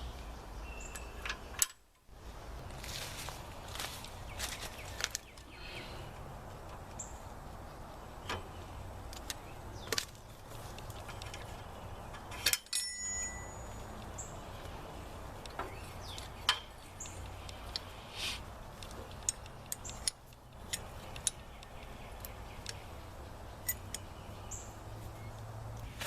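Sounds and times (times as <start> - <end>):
metal clinks and knocks: 10.7 - 14.2.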